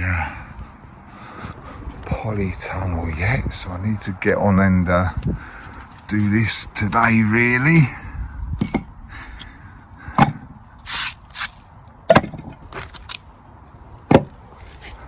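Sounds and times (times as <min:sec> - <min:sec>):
sharp knocks: 0:10.2 - 0:10.5, 0:12.1 - 0:12.6, 0:14.1 - 0:14.4.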